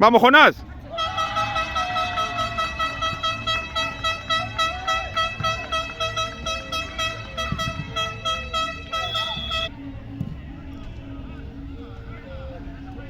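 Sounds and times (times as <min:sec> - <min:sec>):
pulsing horn-like tone: 0:00.9 - 0:09.7.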